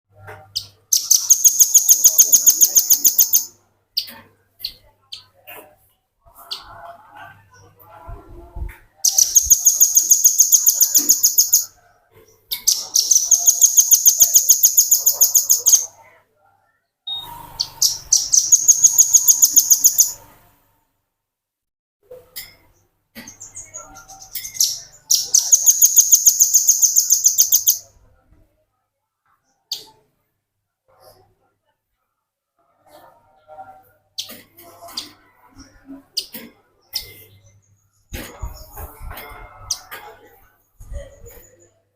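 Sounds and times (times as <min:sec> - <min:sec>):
faint chirps: 0:00.5 - 0:05.4, 0:09.0 - 0:16.0, 0:17.1 - 0:20.4, 0:22.4 - 0:28.0
bird singing rattling trill: 0:00.9 - 0:04.1, 0:09.0 - 0:11.8, 0:12.5 - 0:15.9, 0:17.1 - 0:20.2, 0:22.4 - 0:27.9.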